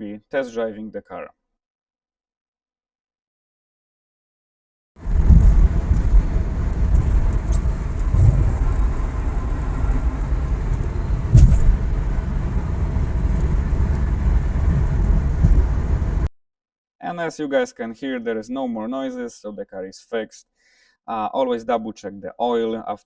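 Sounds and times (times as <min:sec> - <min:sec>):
car road rumble: 0:05.0 - 0:16.3
car suspension bumps: 0:05.0 - 0:16.3.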